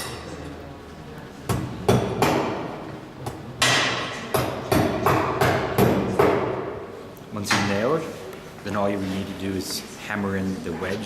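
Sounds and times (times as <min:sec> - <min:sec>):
hammer hitting nail: 0:03.6 - 0:06.6.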